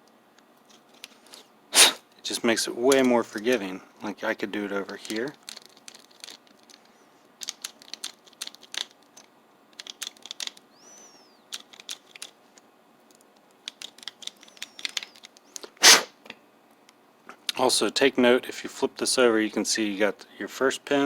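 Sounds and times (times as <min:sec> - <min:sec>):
short high squeak: 0:15.8 - 0:16.1.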